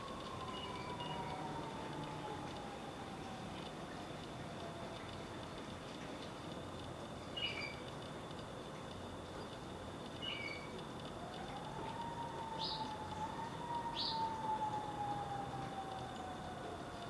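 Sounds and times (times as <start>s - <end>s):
siren wailing: 0.0s - 5.2s, 11.2s - 17.0s.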